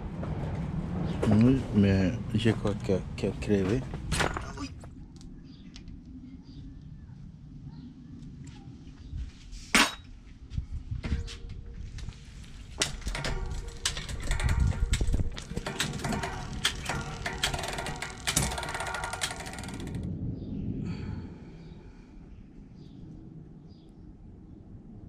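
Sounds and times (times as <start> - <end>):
bicycle metallic clicking and rattling: 12.4 - 20.1.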